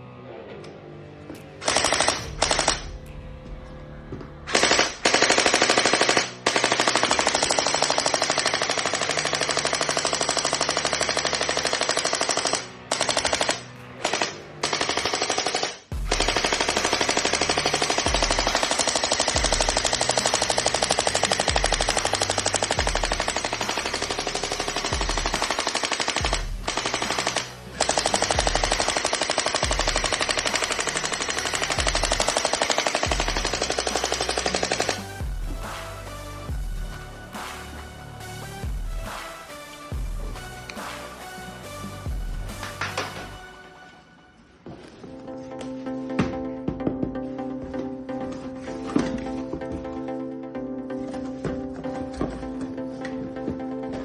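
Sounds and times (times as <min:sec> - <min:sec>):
background music deep beat: 0:01.3 - 0:15.3, 0:15.9 - 0:44.0
toy gun automatic fire: 0:01.6 - 0:02.9, 0:04.5 - 0:35.8.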